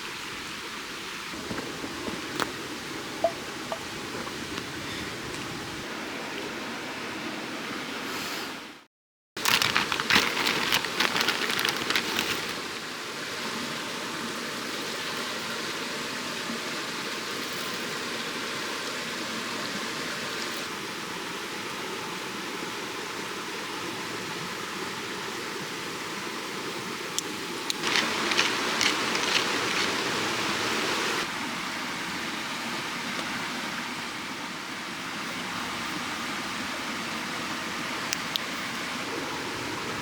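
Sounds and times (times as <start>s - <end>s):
crackling clicks: 9.4s - 12.6s, 27.2s - 30.2s.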